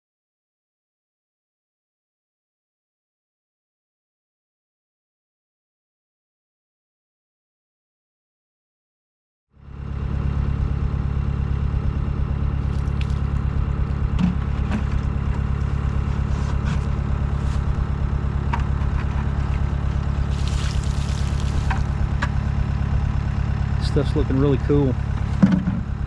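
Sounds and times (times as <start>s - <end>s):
chainsaw idling: 9.7s - 26.0s.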